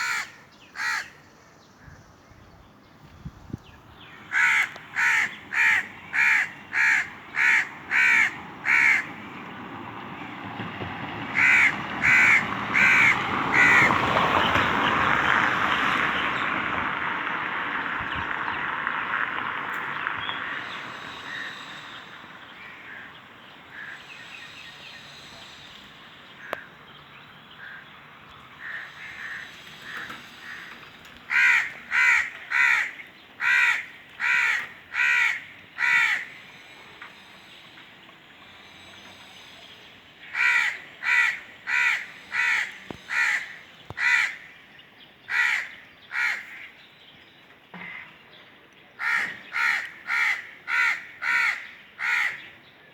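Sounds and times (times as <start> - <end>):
crows cawing: 0.0 - 1.2, 4.1 - 9.2, 11.3 - 14.2, 20.4 - 24.1, 26.4 - 26.8, 27.6 - 27.9, 28.6 - 36.4, 40.2 - 44.6, 45.3 - 46.7, 49.0 - 52.4
rushing noise: 35.7 - 44.4.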